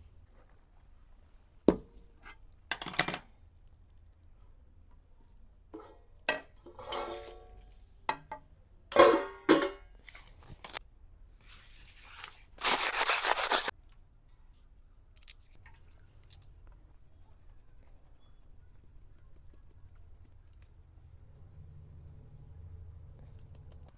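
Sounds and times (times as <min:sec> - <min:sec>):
utensils clinking on a pot: 0:08.9 - 0:09.9
harsh rasping scrape: 0:12.6 - 0:13.7.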